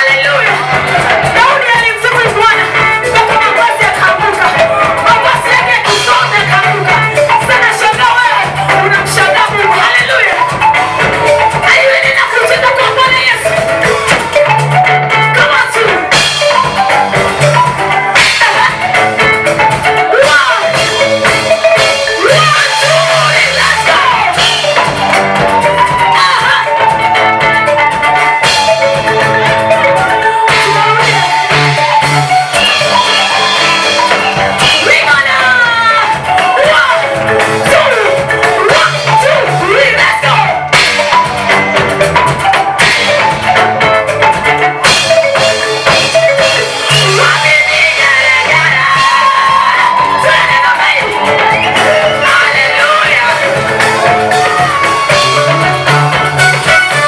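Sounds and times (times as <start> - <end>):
bass line: 0.0 - 57.0
drum kit: 0.0 - 57.0
gospel band music: 0.0 - 57.0
gospel song with singing: 46.9 - 57.0.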